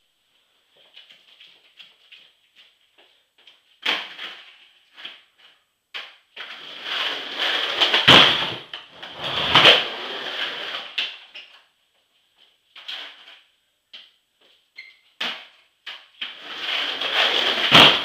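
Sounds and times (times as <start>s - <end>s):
skateboard wheels rolling: 6.0s - 11.2s, 15.9s - 18.0s.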